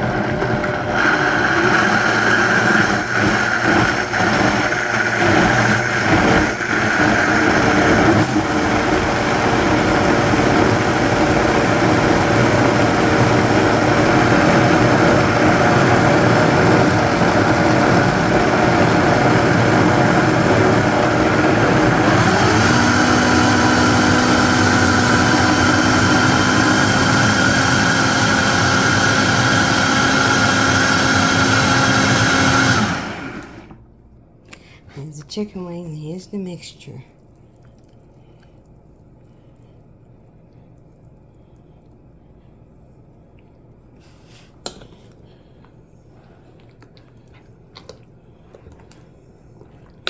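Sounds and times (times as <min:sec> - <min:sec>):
blender motor running: 0:00.0 - 0:33.8.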